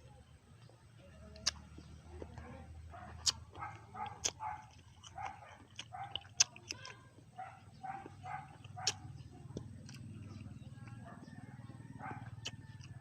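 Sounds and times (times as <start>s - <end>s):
dog barking and yipping: 2.4s - 6.5s, 7.3s - 9.4s, 10.8s - 12.8s.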